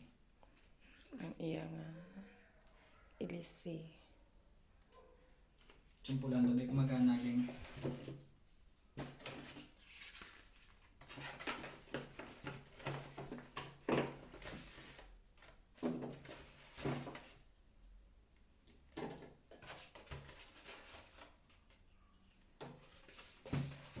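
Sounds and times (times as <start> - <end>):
packaging rustling: 9.0 - 17.4, 19.1 - 21.8, 22.6 - 24.0.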